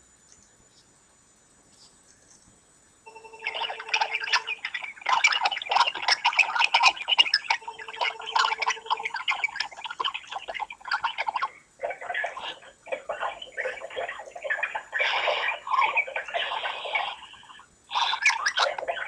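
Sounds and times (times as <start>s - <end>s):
crackling line noise: 0.0s - 19.0s
phone ringback tone beeps: 3.1s - 4.9s, 7.5s - 9.2s.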